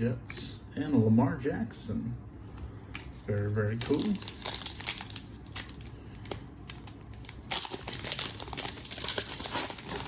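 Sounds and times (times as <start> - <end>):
wrapper crinkling and tearing: 3.7 - 10.0.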